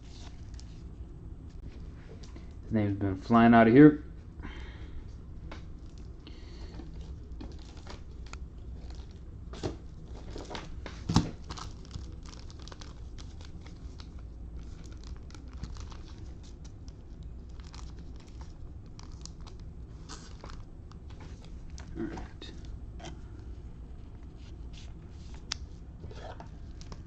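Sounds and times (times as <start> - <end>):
card pack wrapper crinkling: 6.8 - 9.2, 10.0 - 21.9
cards being handled: 24.2 - 27.0.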